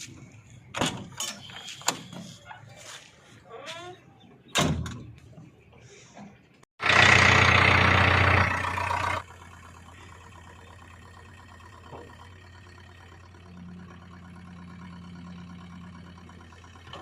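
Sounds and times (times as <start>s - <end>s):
heavy diesel engine running: 6.8s - 17.0s.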